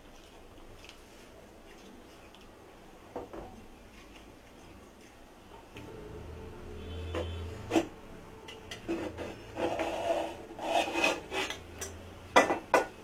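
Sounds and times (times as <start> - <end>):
spoon scraping cooking pot: 7.1 - 12.9.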